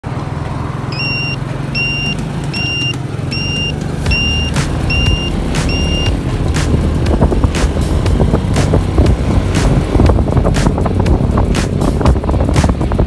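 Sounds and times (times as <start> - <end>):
motorcycle engine humming: 0.0 - 13.0
short high electronic beeps: 0.9 - 6.2.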